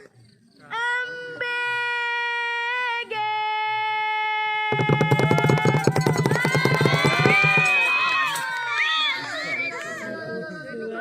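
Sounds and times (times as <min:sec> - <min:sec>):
fast drum roll: 0:04.7 - 0:08.4.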